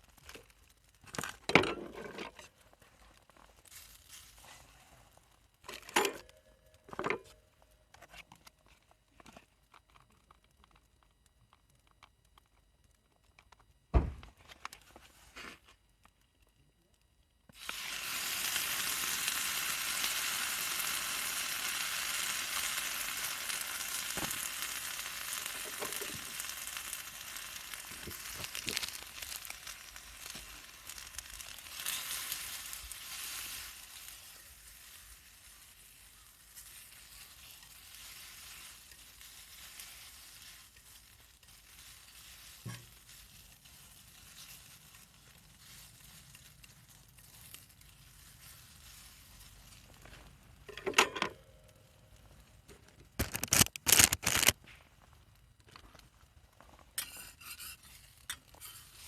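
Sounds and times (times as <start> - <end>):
food sizzling on iron griddle: 17.6 - 49.9, 57.0 - 59.0.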